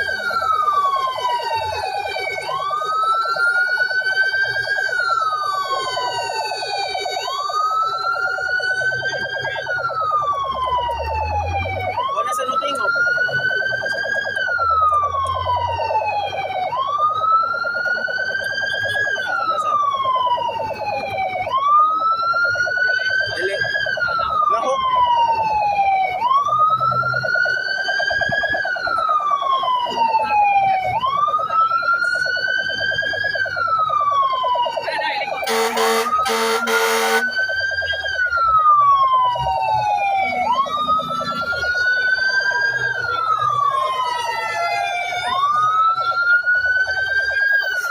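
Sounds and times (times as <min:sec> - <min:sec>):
emergency siren wailing: 0:00.0 - 0:47.9
horn blasts: 0:35.4 - 0:37.3.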